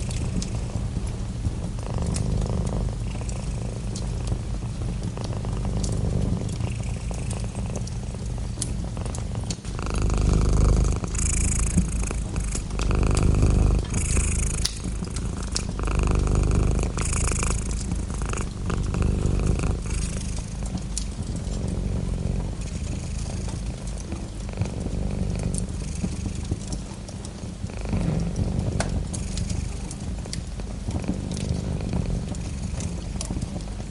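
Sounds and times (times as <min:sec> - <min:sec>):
cat purring: 0:00.0 - 0:33.9
faint clicks: 0:01.8 - 0:21.7.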